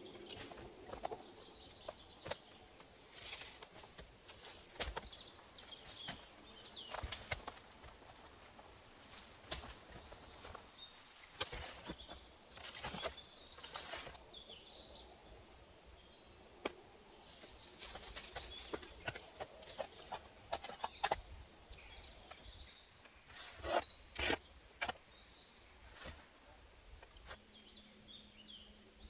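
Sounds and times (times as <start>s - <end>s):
clicks and rustles of handwork: 0.2s - 14.2s.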